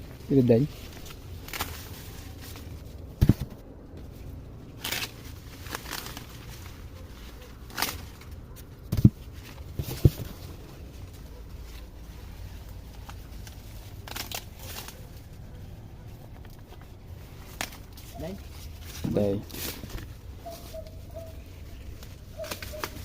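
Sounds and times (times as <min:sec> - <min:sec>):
rustling stalks and leaves: 0:00.0 - 0:23.0
corn ears snapping off stalks: 0:01.0 - 0:01.9, 0:04.8 - 0:06.4, 0:07.6 - 0:10.4, 0:13.0 - 0:15.2, 0:17.5 - 0:18.1, 0:22.0 - 0:23.0.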